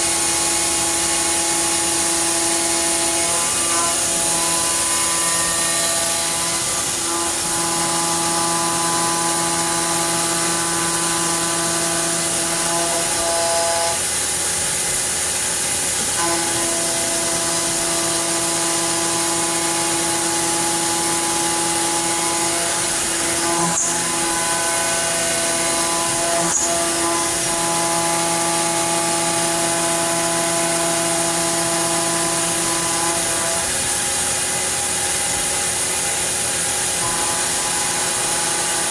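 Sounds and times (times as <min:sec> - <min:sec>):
machine whirring with hiss: 0:00.0 - 0:38.9
motor whine: 0:16.0 - 0:38.9.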